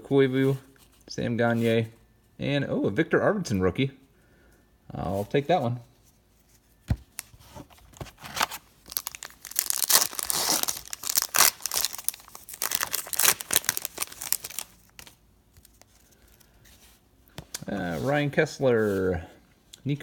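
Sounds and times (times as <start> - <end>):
foil wrapper tearing and crinkling: 8.2 - 16.5.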